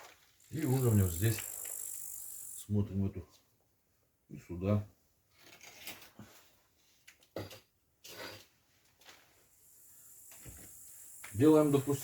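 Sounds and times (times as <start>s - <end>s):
faint steady hiss: 9.0s - 12.0s.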